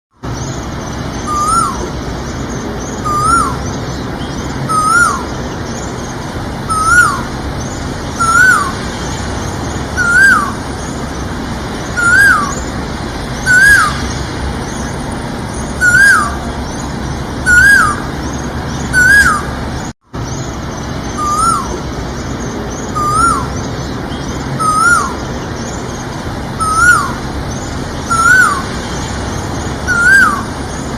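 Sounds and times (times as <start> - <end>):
steady background hiss: 0.2 - 30.9
koel whistled call: 1.2 - 1.9, 3.0 - 3.6, 4.7 - 5.3, 6.7 - 7.3, 8.2 - 8.8, 10.0 - 10.6, 12.0 - 12.7, 13.4 - 14.1, 15.8 - 16.5, 17.4 - 18.1, 18.9 - 19.6, 21.2 - 21.8, 22.9 - 23.5, 24.6 - 25.2, 26.6 - 27.2, 28.0 - 28.7, 29.9 - 30.6.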